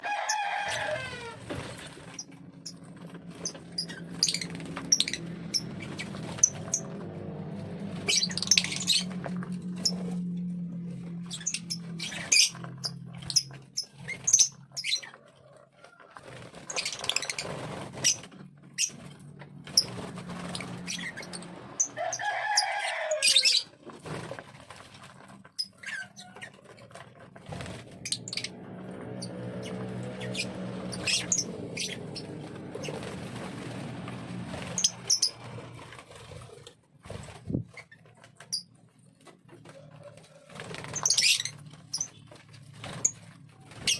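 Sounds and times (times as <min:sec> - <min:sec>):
rooster crowing: 0:00.0 - 0:01.4, 0:21.8 - 0:23.6.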